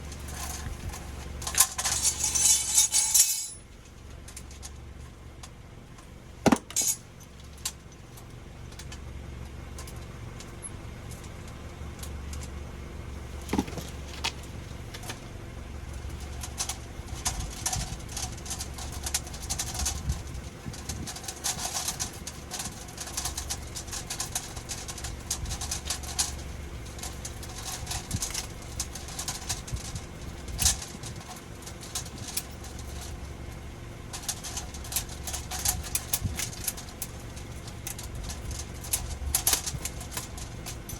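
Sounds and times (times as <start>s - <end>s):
metal tools clattering: 0.2s - 3.7s, 6.5s - 7.0s
light metal clinks: 1.4s - 3.6s.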